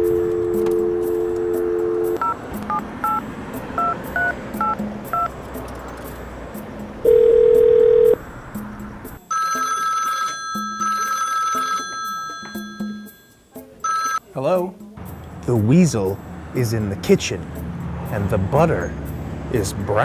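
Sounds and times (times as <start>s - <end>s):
steady dial tone: 0.0s - 3.2s, 7.0s - 8.2s
touch-tone keypad beeps: 0.1s - 3.2s, 3.8s - 5.3s, 13.8s - 14.2s
telephone ringing: 7.0s - 8.2s, 9.3s - 13.2s, 13.8s - 14.3s.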